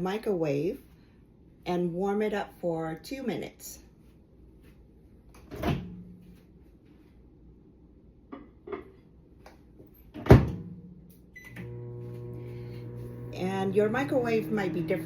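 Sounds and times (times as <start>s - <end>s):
microwave oven humming: 11.4s - 15.0s.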